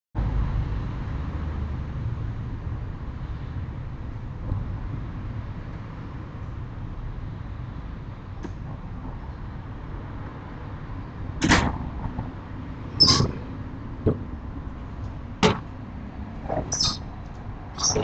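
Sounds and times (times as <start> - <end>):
low background rumble: 0.3 - 18.0
sliding door banging shut: 15.4 - 15.7.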